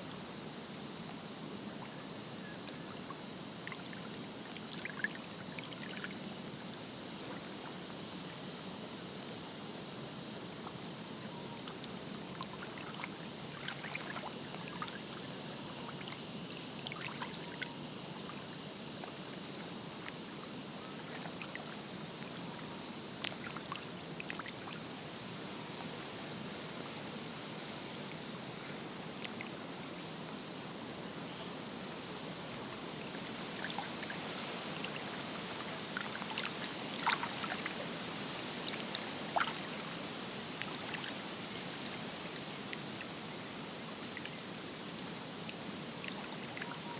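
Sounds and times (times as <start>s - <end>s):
lake water lapping at shore: 12.4s - 15.2s, 33.1s - 37.9s, 38.5s - 42.4s.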